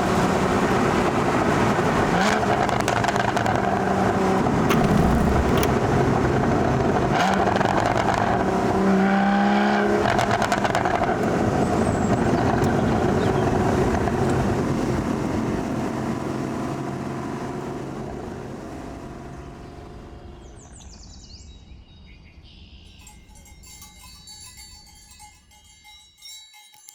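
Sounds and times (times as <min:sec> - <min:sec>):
car engine and exhaust: 0:00.0 - 0:21.3
faint chiming notes: 0:22.9 - 0:26.9.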